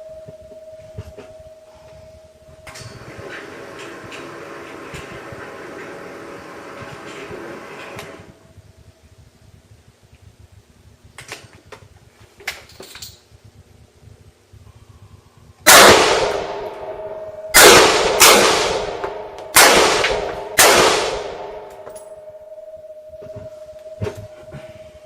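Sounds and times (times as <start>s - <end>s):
rifle shots echoing: 15.7s - 22.0s.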